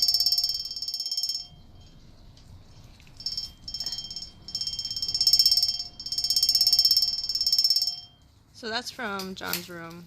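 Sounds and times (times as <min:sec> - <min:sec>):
high-pitched buzzing rattle: 0:00.0 - 0:02.0, 0:03.0 - 0:08.2.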